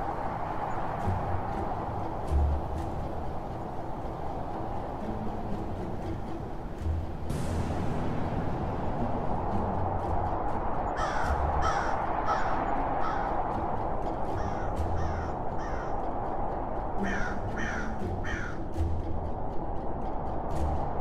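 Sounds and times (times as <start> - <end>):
crows cawing: 11.0 - 13.4, 14.4 - 16.0, 17.0 - 18.6.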